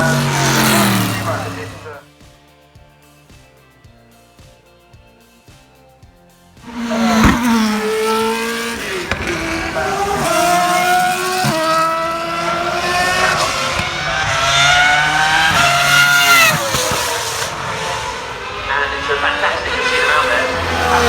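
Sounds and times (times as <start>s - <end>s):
race car engine accelerating: 0.0s - 2.0s, 6.6s - 21.0s.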